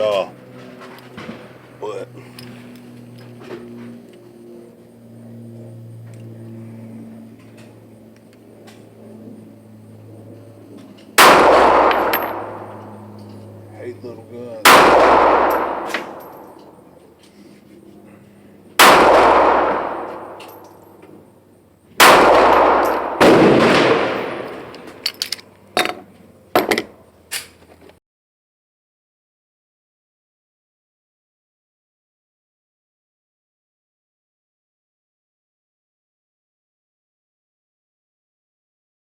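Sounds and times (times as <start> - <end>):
handgun shots echoing: 11.2 - 13.0, 14.6 - 16.8, 18.8 - 21.0, 22.0 - 25.4
sharp metallic clicks and clinks: 15.4 - 16.8, 20.1 - 21.1, 24.4 - 27.6.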